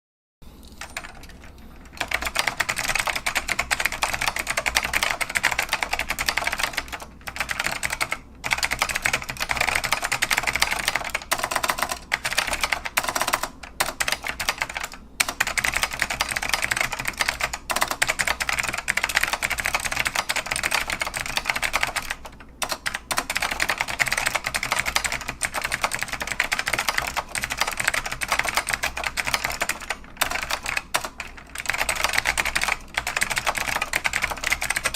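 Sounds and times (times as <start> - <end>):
fast mechanical keyboard typing: 0.7 - 34.9.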